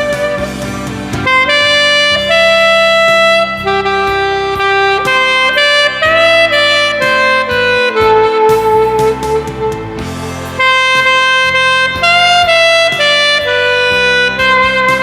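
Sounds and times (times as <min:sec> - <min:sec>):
accompaniment track: 0:00.0 - 0:15.0
saxophone slow melody: 0:00.0 - 0:15.0.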